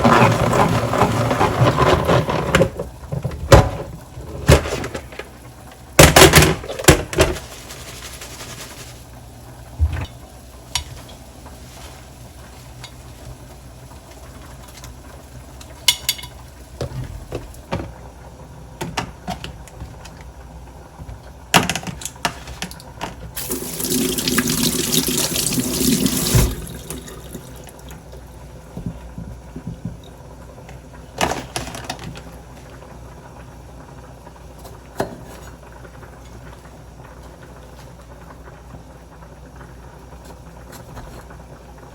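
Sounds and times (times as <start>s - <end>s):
water running from tap: 23.4s - 28.3s.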